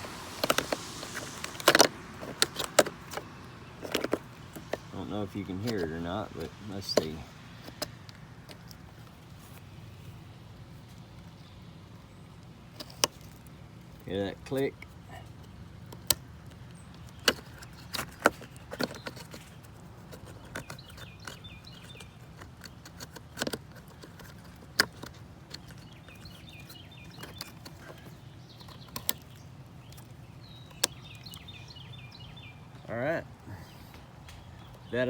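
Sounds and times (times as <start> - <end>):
handling rattles: 0.0 - 32.8
birds chirping faintly: 0.0 - 35.0
plastic connectors clicking: 0.4 - 5.1.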